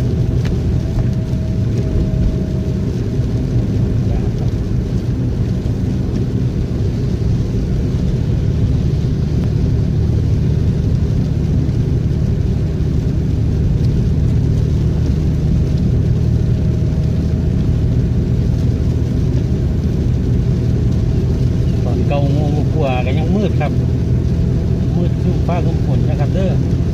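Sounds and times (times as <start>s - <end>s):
car engine hum: 0.0s - 26.9s
road noise: 0.0s - 26.9s.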